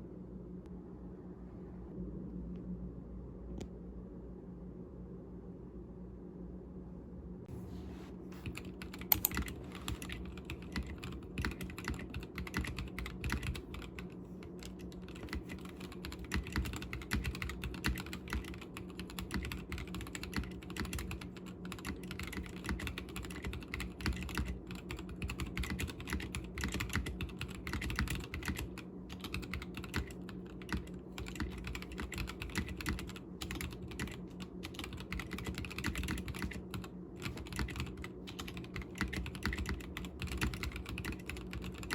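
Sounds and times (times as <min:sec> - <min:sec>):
faint low hum: 0:00.0 - 0:41.9
mechanical keyboard key clacks: 0:08.9 - 0:14.0.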